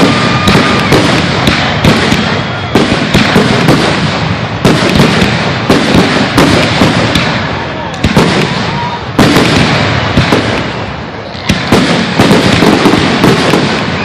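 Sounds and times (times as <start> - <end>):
firework whistle: 0.0 - 5.2, 8.3 - 14.0
fireworks bangs: 0.0 - 14.0
fireworks crackling: 0.0 - 14.0.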